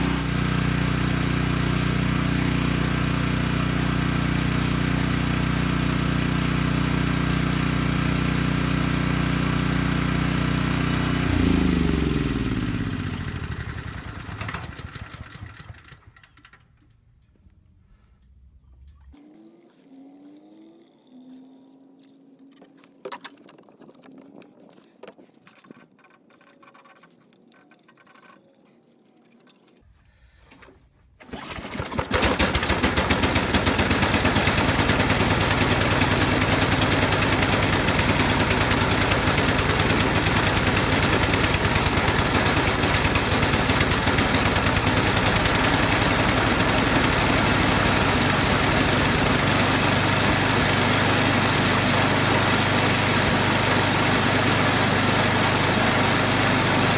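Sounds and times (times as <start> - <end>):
small gasoline engine running: 0.0 - 16.8, 31.2 - 56.9.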